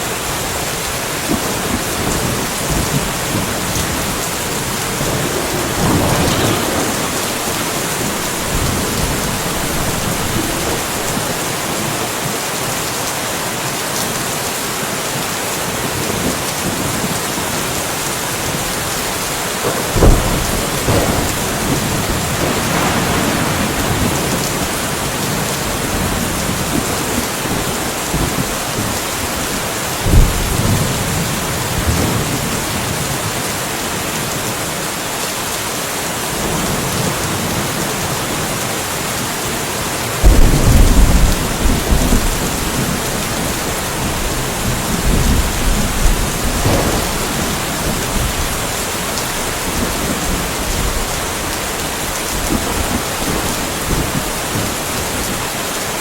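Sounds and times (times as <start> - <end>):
steady rain falling: 0.0 - 56.0
thunder: 1.3 - 11.7, 19.6 - 29.0, 30.0 - 33.1, 40.2 - 55.4.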